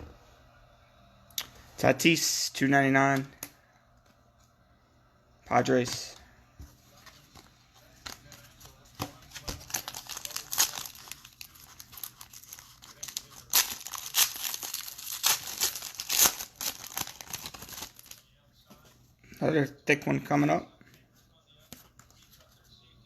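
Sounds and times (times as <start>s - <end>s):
foil wrapper tearing and crinkling: 9.3s - 18.2s.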